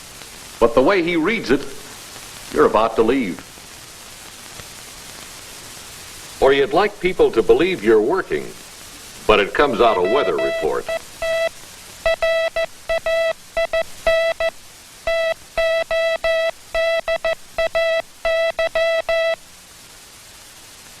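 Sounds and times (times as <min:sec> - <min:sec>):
low hiss: 0:00.0 - 0:21.0
morse code beeps: 0:09.7 - 0:14.5, 0:15.1 - 0:19.4.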